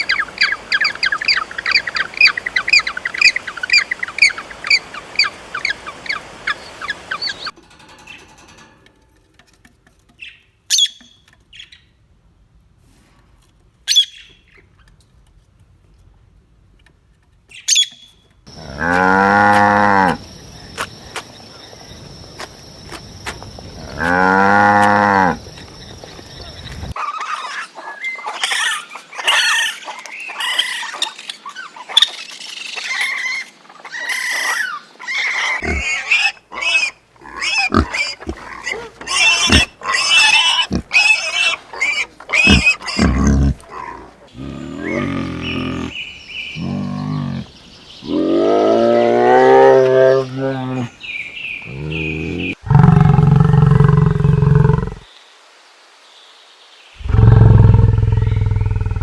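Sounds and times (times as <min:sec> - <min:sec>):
high animal squeaks and chirps: 0:10.2 - 0:11.7, 0:13.9 - 0:14.4, 0:17.5 - 0:18.2, 0:32.8 - 0:43.6
pitched animal cries: 0:34.0 - 0:46.0
loud deep animal calls: 0:35.6 - 0:50.9, 0:51.7 - 0:55.1, 0:57.0 - 0:59.0.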